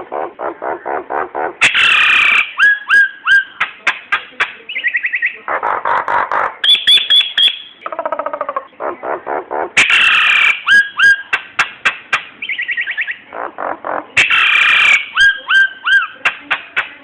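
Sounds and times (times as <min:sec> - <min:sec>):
starling singing: 0:00.0 - 0:17.0.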